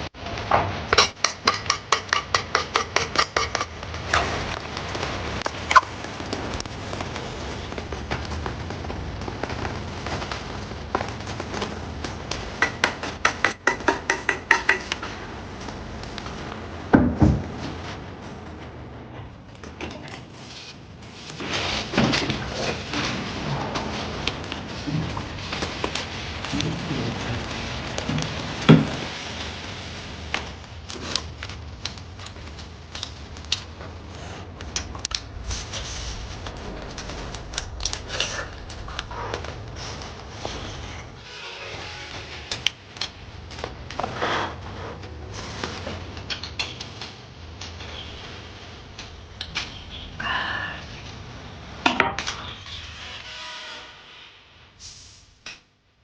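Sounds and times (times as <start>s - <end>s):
utensils tapping dishes: 0.9s - 3.8s, 12.6s - 15.0s.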